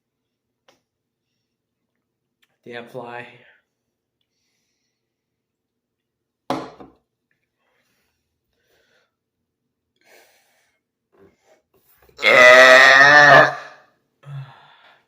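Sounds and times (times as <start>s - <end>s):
faint breaths: 3.5s - 5.4s, 7.5s - 9.3s, 10.0s - 12.0s, 14.2s - 15.0s.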